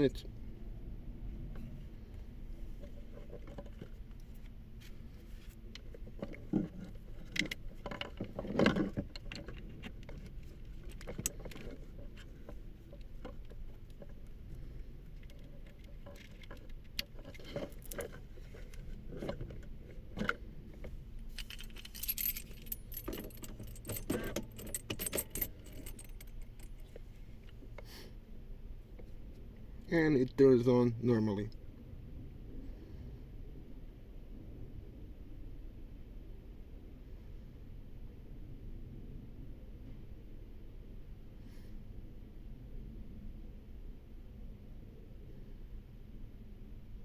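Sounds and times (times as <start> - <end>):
low steady hum: 0.0 - 47.0
handling clicks and knocks: 5.6 - 27.8
keys jangling: 21.3 - 26.9.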